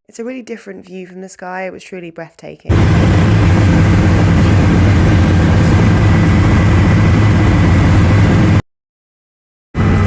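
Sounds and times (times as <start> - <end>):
helicopter rotor and engine drone: 2.7 - 8.6, 9.8 - 10.0.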